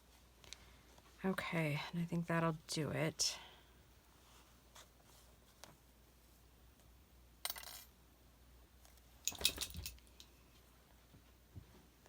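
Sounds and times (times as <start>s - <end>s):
small objects clattering on table: 9.3s - 10.3s.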